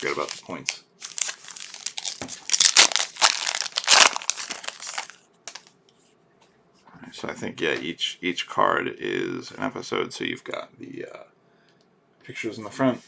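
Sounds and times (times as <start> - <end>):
wrapper crinkling and tearing: 0.0 - 5.7.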